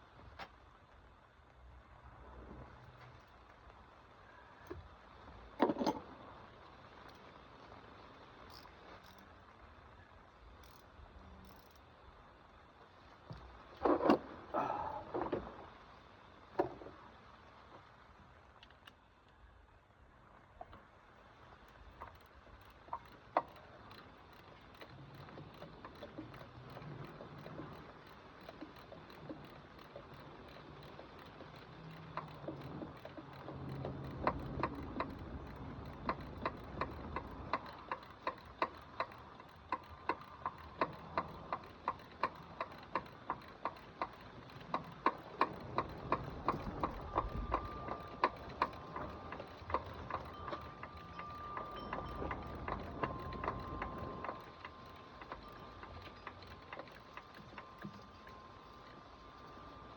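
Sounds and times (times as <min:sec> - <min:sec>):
ratchet wrench clicking: 0:10.6 - 0:11.8, 0:22.0 - 0:58.3.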